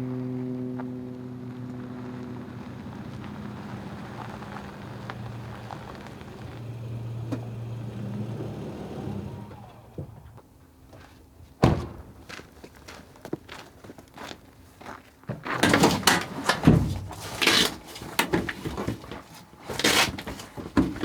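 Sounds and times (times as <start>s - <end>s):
pickup truck engine running: 0.0s - 13.6s
loud thud: 11.6s - 12.5s.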